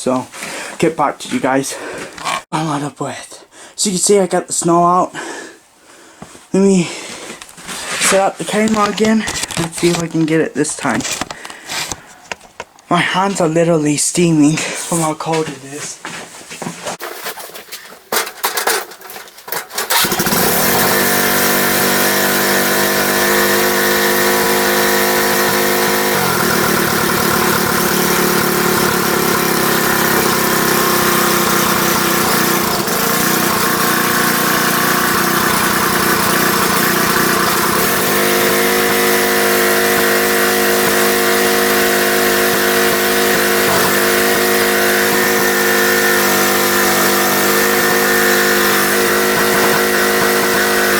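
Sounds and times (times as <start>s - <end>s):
knocks and handling noises: 7.3s - 12.9s, 15.4s - 19.9s
riding lawn mower engine: 7.7s - 12.8s, 17.0s - 50.9s.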